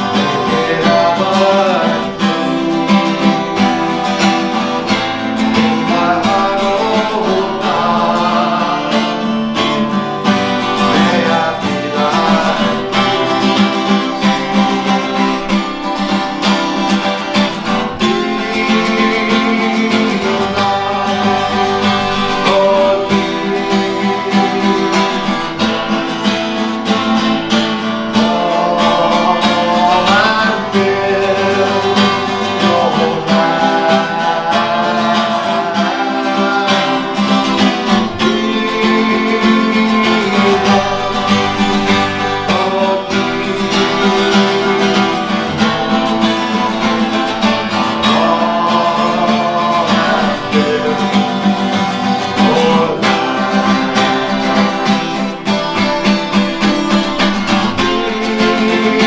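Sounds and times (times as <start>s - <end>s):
acoustic guitar strumming: 0.0s - 59.0s.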